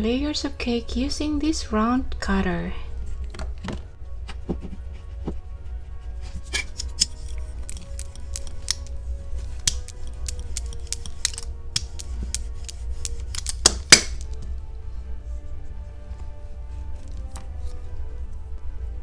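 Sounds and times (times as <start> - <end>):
background music: 0.0 - 19.0
plastic tools clicking and tapping: 6.3 - 14.4.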